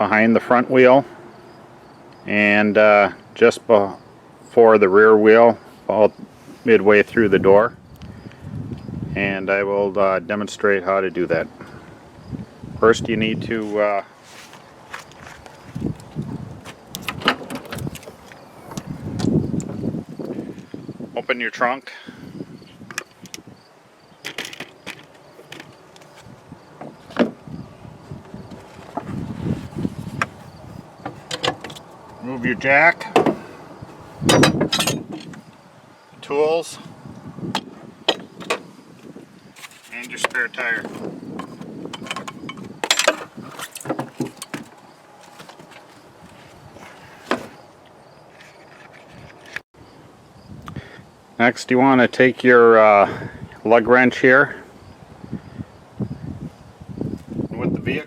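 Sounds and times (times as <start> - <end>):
car trunk latch clicks and knocks: 33.0 - 33.4, 34.2 - 35.4.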